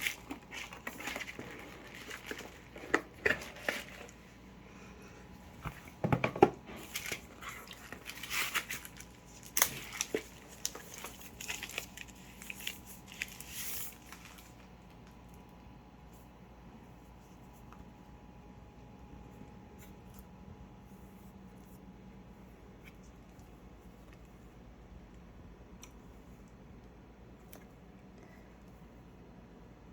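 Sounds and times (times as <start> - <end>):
packaging rustling and tearing: 0.0 - 4.4, 6.6 - 15.2.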